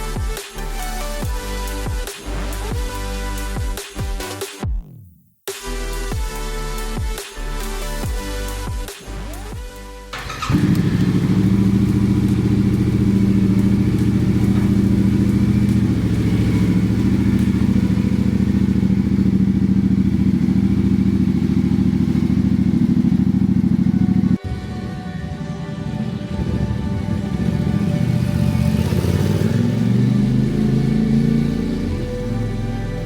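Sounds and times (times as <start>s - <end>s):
motorcycle engine running: 10.1s - 33.0s.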